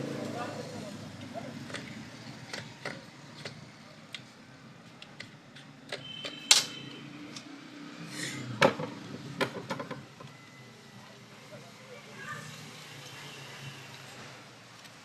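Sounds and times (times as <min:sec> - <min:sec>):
hard objects clicking and knocking: 0:01.6 - 0:04.3, 0:08.6 - 0:10.4.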